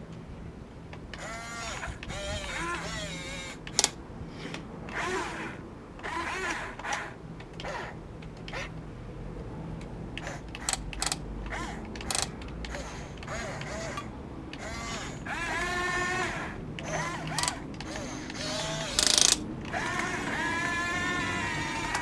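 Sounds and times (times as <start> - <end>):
sharp clicks and knocks: 0.9 - 5.2, 6.0 - 8.8, 9.8 - 22.0
small electric motors whirring: 1.1 - 8.8, 10.2 - 22.0.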